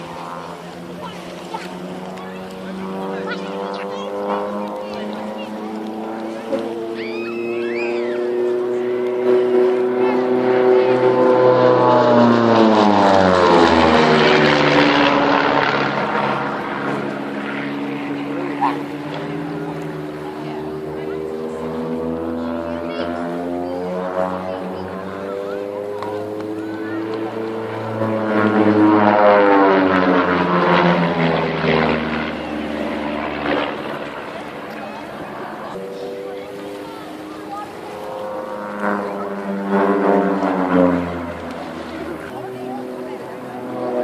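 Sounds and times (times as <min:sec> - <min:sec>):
aircraft flying past: 0:00.0 - 0:44.0.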